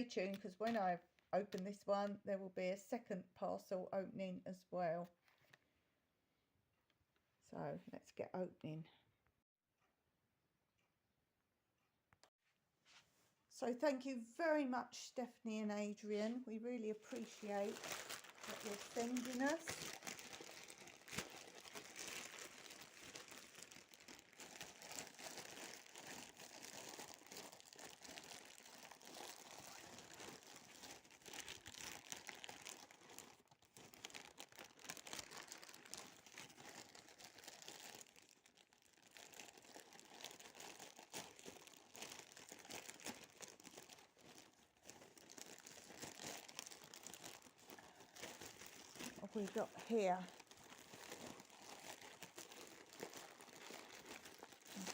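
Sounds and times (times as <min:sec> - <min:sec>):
packaging crinkling and tearing: 0:17.0 - 0:54.9.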